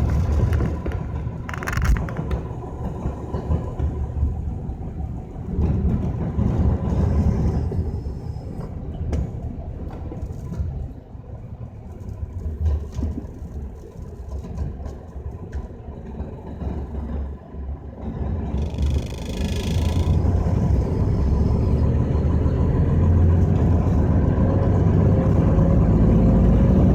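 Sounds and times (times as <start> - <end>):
vehicle rumbling on road: 0.0 - 26.9
engine revving: 18.4 - 26.9.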